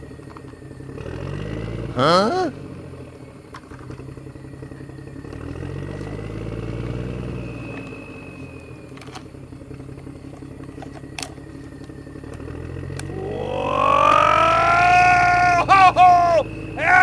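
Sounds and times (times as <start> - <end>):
engine running: 0.0 - 17.0.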